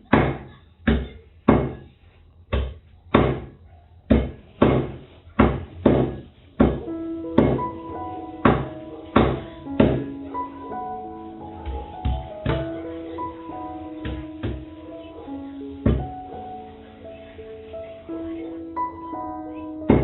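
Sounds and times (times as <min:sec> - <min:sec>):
background music with plucked notes: 0:06.8 - 0:20.0.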